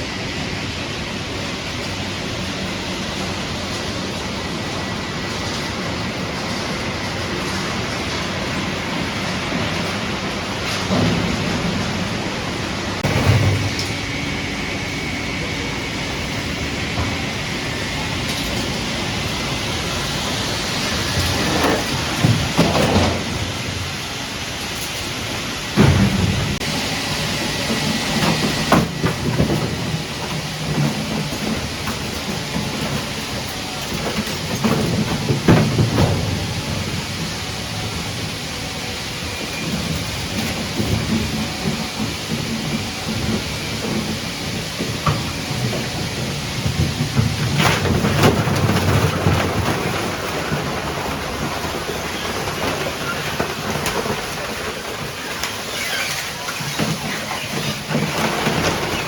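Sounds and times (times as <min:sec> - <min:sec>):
machinery clatter and rumble: 0:00.0 - 0:59.0
heavy knocks and clanks: 0:09.5 - 0:23.9, 0:25.7 - 0:26.8, 0:27.6 - 0:37.3, 0:39.6 - 0:59.0.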